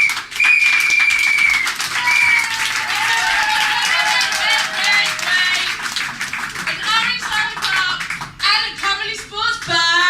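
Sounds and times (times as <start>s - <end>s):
shrill whistle: 0.0s - 2.6s
audience applauding: 0.0s - 8.6s
whooping cheers: 0.4s - 5.7s.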